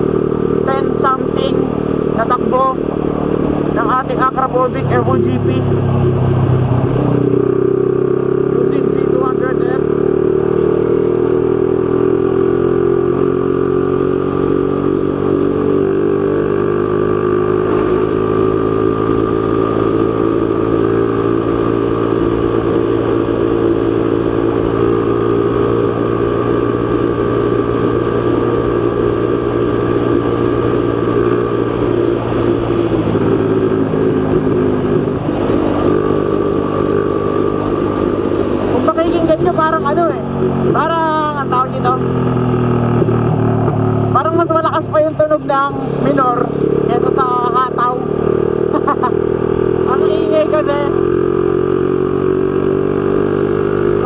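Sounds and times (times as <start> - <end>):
motorcycle exhaust at high revs: 0.0 - 54.0.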